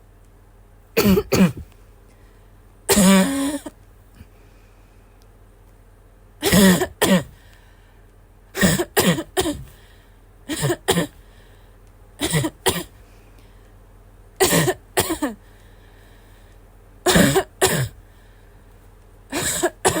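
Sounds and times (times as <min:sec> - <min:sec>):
person coughing: 0:01.0 - 0:01.7, 0:02.9 - 0:03.8, 0:06.4 - 0:07.4, 0:08.6 - 0:09.8, 0:10.5 - 0:11.2, 0:12.2 - 0:12.9, 0:14.4 - 0:15.4, 0:17.1 - 0:18.0, 0:19.3 - 0:20.0.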